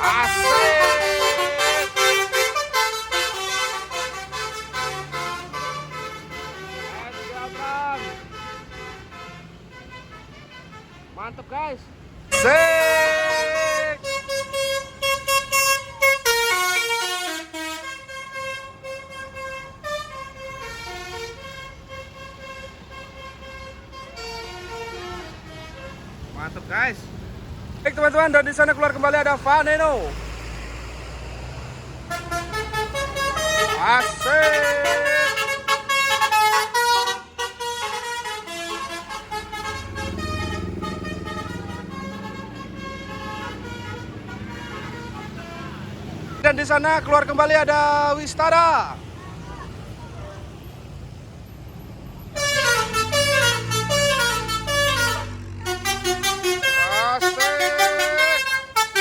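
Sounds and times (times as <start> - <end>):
bus melody horn: 0.0 - 11.2, 12.2 - 26.2, 32.0 - 47.3, 52.3 - 59.0
short horn tones: 52.4 - 59.0.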